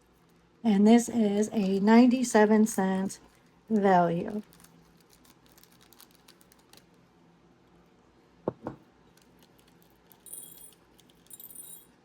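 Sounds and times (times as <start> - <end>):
packet rustling: 3.2 - 7.0, 9.1 - 11.3
glass beads clinking: 10.1 - 12.0.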